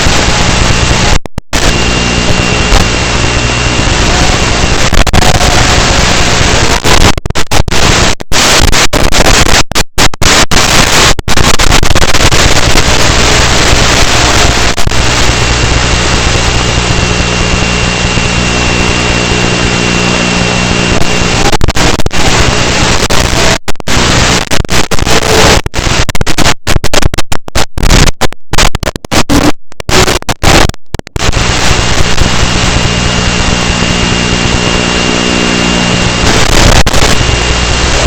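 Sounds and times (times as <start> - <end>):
electric motor hum: 0.0 - 6.8, 13.2 - 21.5, 31.4 - 36.4.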